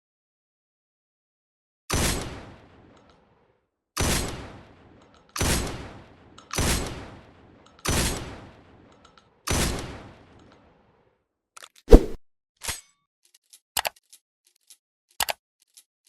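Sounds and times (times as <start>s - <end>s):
shotgun shots with echo: 9.5s - 10.4s.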